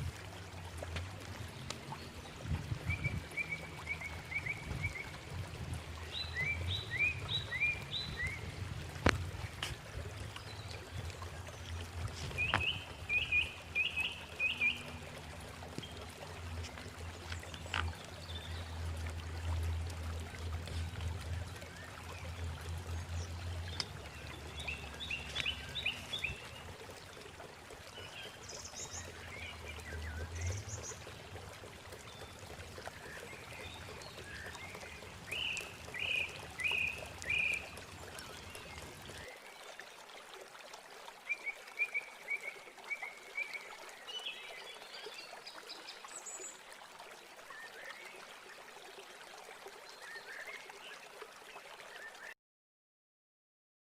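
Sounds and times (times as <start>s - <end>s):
small birds chirping: 6.0s - 18.8s, 21.6s - 39.3s.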